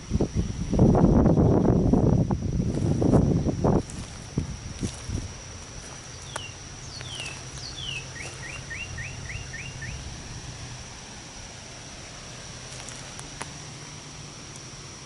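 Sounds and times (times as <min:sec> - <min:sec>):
songbird whistling: 0:06.1 - 0:10.1.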